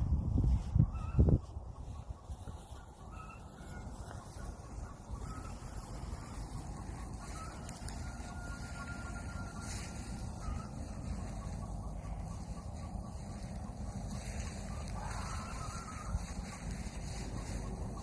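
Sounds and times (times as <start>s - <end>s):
wind rumble on microphone: 0.0s - 18.0s.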